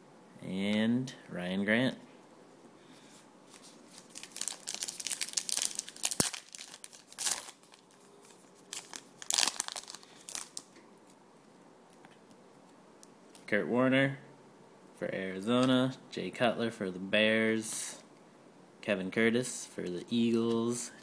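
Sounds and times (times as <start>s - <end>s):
wrapper being torn and crinkled: 3.6s - 10.7s.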